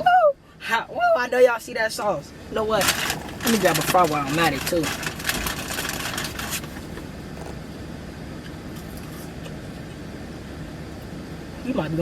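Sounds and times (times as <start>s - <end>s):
vehicle engine rumbling: 0.0s - 12.0s
rustling: 2.8s - 7.7s.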